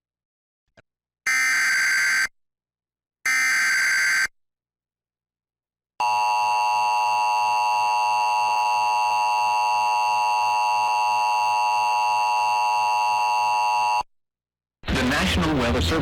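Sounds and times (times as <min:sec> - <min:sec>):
two-tone alarm: 0:01.3 - 0:02.4, 0:03.2 - 0:04.4, 0:06.0 - 0:14.1.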